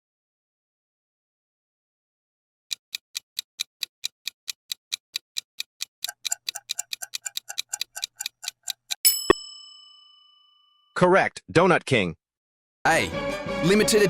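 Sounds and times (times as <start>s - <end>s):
clock ticking: 2.7s - 9.2s.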